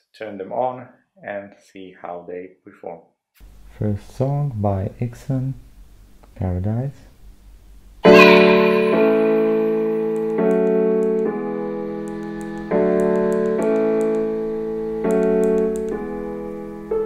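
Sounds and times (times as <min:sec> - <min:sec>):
electronic keyboard chords: 0:08.0 - 0:17.0.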